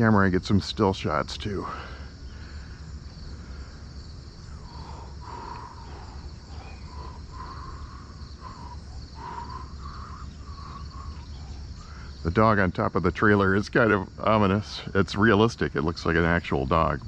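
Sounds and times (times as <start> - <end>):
insects chirping: 0.0 - 17.0
low steady rumble: 0.0 - 17.0.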